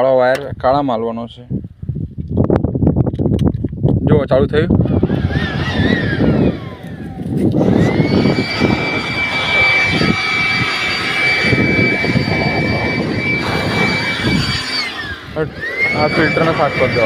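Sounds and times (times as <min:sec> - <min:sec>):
electric air blower whining: 0:04.7 - 0:17.0
rushing air: 0:04.8 - 0:17.0.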